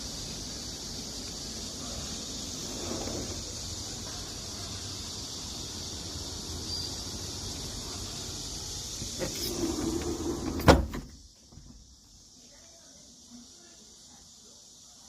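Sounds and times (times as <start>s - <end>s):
low traffic rumble: 0.0s - 11.1s
high steady hiss: 0.0s - 15.0s
sliding window shutting: 2.4s - 3.8s, 9.0s - 11.1s.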